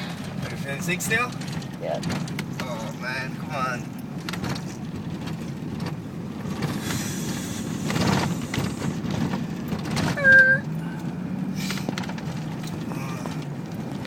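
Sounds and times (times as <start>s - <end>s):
car cabin low rumble: 0.0s - 14.0s
knocks and rattles: 0.2s - 3.2s, 3.8s - 6.8s, 7.8s - 10.4s, 11.7s - 14.0s.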